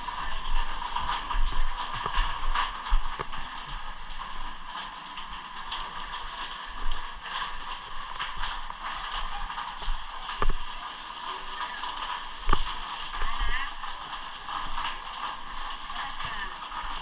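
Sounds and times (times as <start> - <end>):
water rushing: 0.0 - 17.0.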